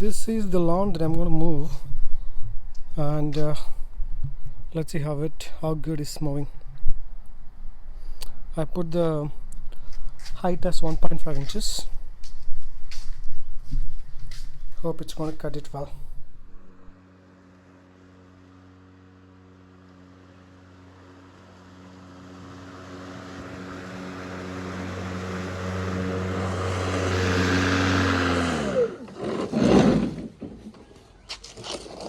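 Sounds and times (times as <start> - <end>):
lawn mower running: 16.4 - 30.4.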